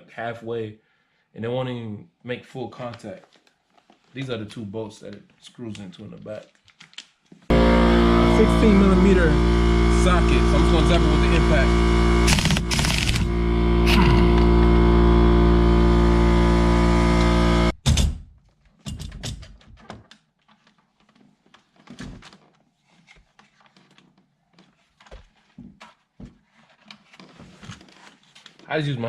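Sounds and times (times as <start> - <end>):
impact wrench hammering: 12.3 - 13.3.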